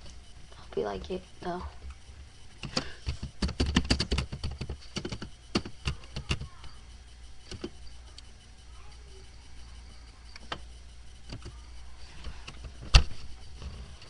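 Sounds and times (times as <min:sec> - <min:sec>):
keyboard typing clicks: 0:02.6 - 0:06.8.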